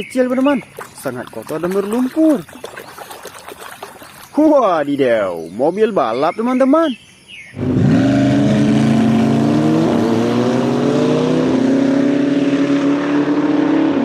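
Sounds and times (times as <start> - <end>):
race car engine at high revs: 7.6 - 14.0.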